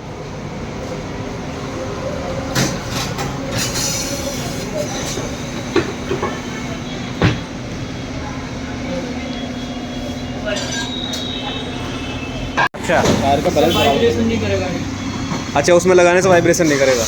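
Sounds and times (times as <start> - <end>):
tyre machine rumble with squeal: 2.4 - 17.0.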